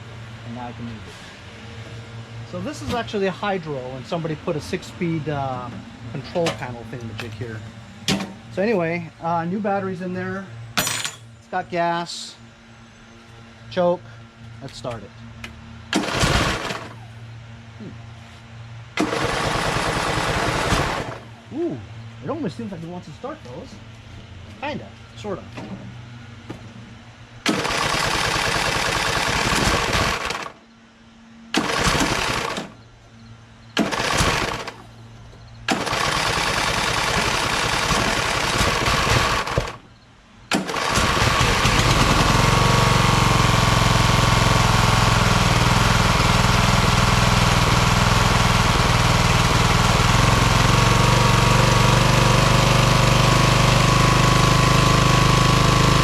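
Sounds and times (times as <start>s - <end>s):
engine starter cranking: 15.9s - 17.0s, 19.0s - 21.3s, 27.4s - 30.6s, 31.5s - 32.8s, 33.7s - 34.9s, 35.6s - 39.8s, 40.5s - 52.5s
lawn tractor engine running: 15.9s - 17.1s, 18.9s - 21.4s, 27.4s - 30.6s, 31.5s - 32.9s, 33.7s - 39.9s, 40.5s - 56.0s.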